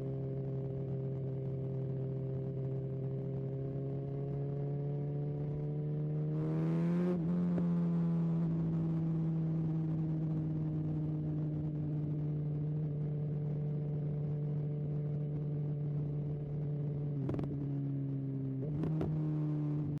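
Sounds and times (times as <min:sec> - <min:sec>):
motorcycle engine droning: 0:00.0 - 0:20.0.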